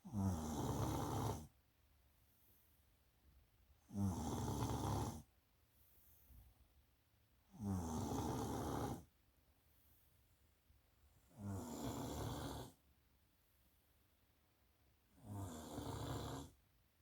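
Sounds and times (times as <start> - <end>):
snoring: 0.0 - 1.6, 3.8 - 5.3, 7.5 - 9.1, 11.3 - 12.8, 15.1 - 16.6.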